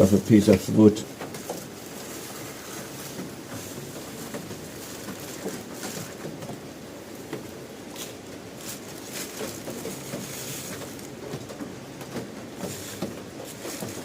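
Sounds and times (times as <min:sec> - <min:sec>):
rain pattering and dripping: 0:00.0 - 0:14.0.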